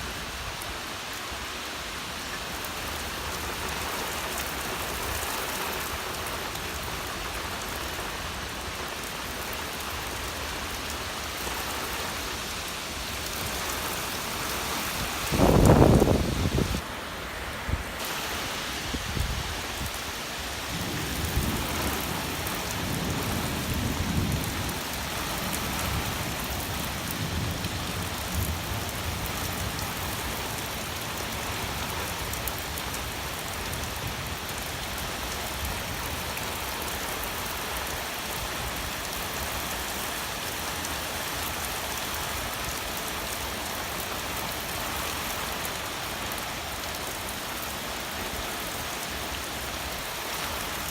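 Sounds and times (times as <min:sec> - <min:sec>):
heavy rain pouring: 0:00.0 - 0:50.9
thunder rumbling: 0:14.8 - 0:16.8, 0:20.7 - 0:28.9.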